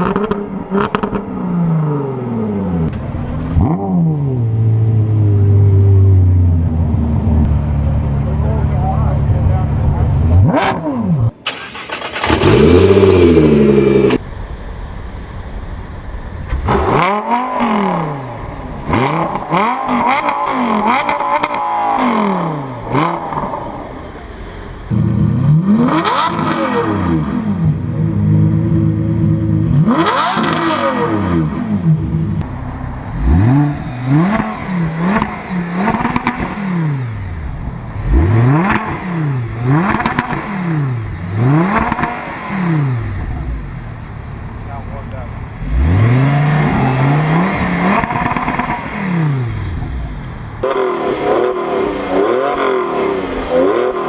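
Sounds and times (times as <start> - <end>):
supercar engines revving: 0.0 - 54.0.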